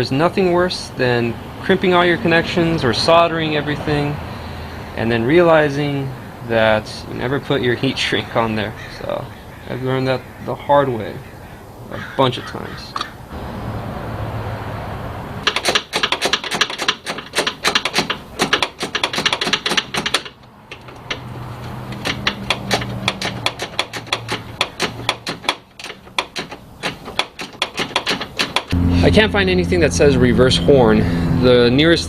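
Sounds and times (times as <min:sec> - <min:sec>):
ratcheting clicks: 0:15.4 - 0:28.8.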